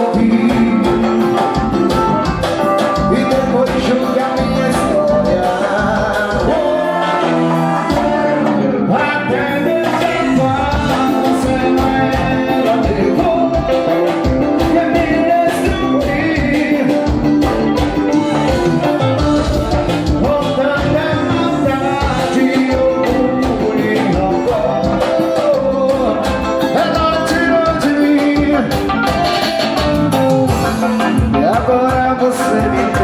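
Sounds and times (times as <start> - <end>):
dance music with steady beat: 9.8 - 33.0.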